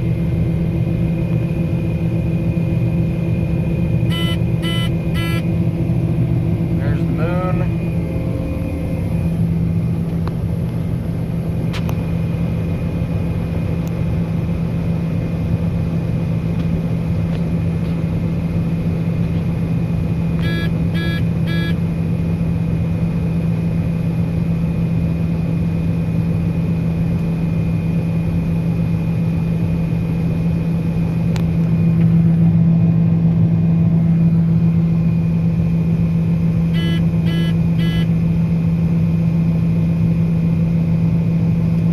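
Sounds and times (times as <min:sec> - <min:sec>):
diesel engine droning: 0:00.0 - 0:41.9
short electronic beeps: 0:04.1 - 0:05.5, 0:20.4 - 0:21.8, 0:36.7 - 0:38.1.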